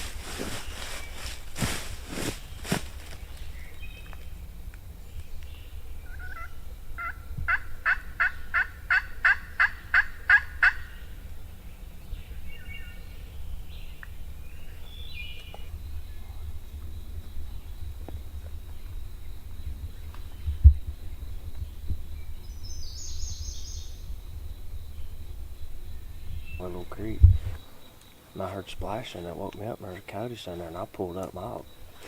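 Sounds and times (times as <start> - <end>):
turkey yelps: 6.1 - 10.8.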